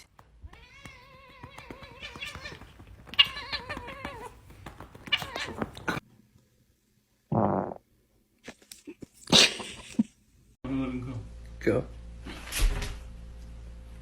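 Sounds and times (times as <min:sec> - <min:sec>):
cat meowing: 0:00.5 - 0:04.4, 0:05.0 - 0:06.0.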